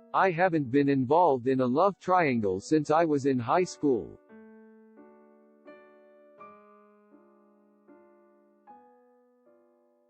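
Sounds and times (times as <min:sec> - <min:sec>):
electric piano playing gentle chords: 0:03.5 - 0:10.0.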